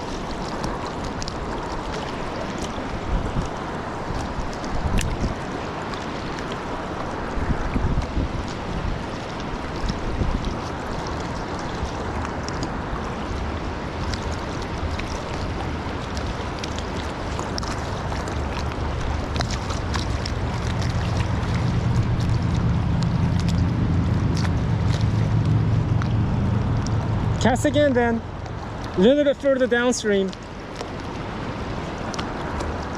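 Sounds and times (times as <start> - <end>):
river water running: 0.0 - 32.9
wind buffeting microphone: 0.0 - 32.9.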